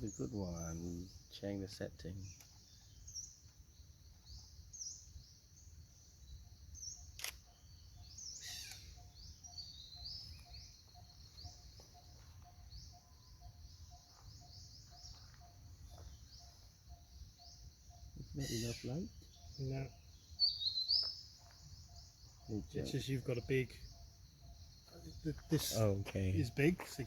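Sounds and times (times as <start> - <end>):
camera shutter click: 7.2 - 7.4.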